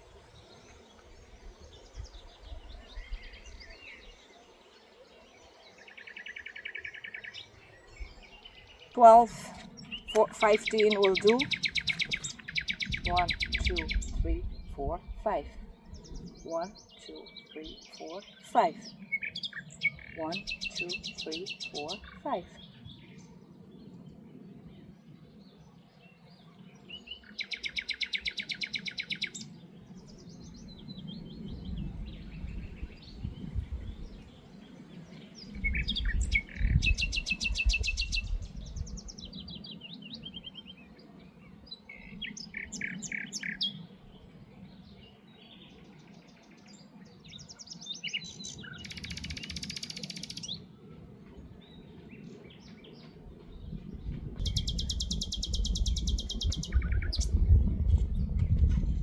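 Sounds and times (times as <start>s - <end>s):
wind rumble on microphone: 0.0s - 4.4s, 6.4s - 59.0s
songbirds singing: 0.0s - 59.0s
bird rattling trills: 11.1s - 14.0s.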